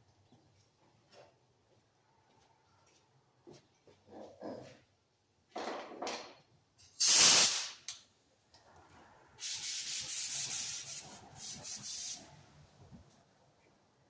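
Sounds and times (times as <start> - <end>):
spray gun hissing: 7.0 - 7.7, 9.4 - 12.4.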